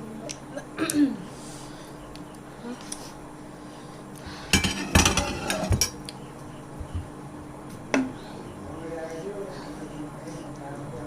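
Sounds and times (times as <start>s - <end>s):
plates and cutlery clattering: 4.5s - 6.0s.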